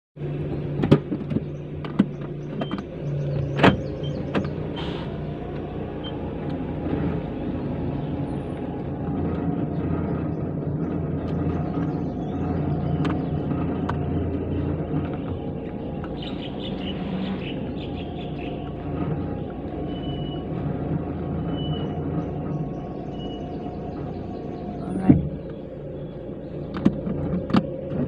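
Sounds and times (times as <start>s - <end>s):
car engine humming: 0.2s - 28.0s
sharp clicks and knocks: 0.8s - 4.6s, 26.7s - 28.0s.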